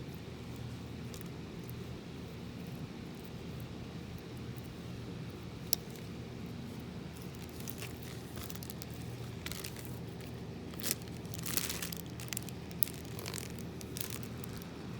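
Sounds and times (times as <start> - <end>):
steady low hum: 0.0 - 14.9
slime crackling and popping: 7.2 - 14.8.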